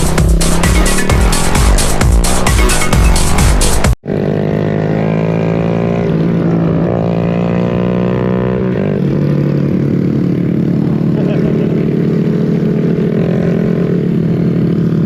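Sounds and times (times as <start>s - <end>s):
electronic music: 0.0s - 4.0s
motorcycle engine idling: 0.0s - 5.1s, 8.9s - 15.0s.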